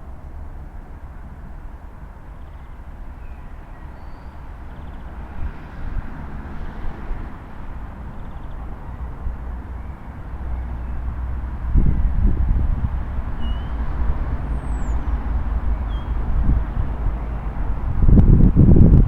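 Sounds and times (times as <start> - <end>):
steady low rumble: 11.2 - 19.0.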